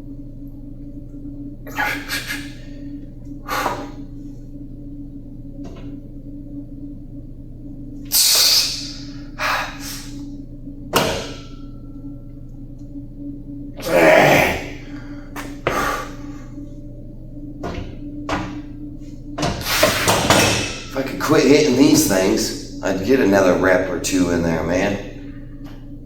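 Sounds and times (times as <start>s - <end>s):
low machine hum: 0.0s - 26.0s
weightlifter exhaling sharply: 8.1s - 10.2s.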